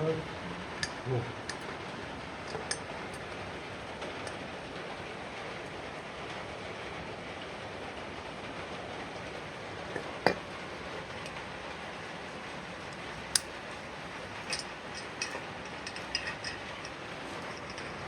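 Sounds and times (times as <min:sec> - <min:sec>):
steady low background noise: 0:00.0 - 0:18.0
sharp metallic clicks: 0:13.4 - 0:13.6.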